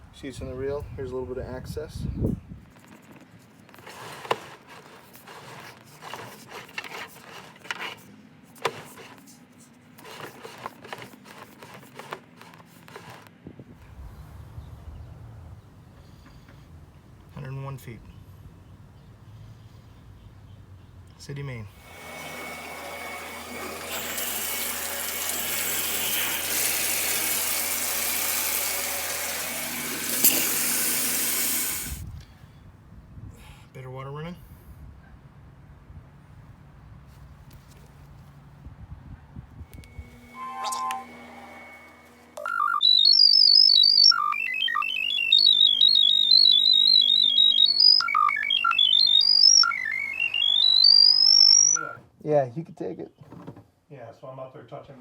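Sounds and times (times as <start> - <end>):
water running from tap: 26.4 - 32.0
high electronic melody: 39.8 - 52.0.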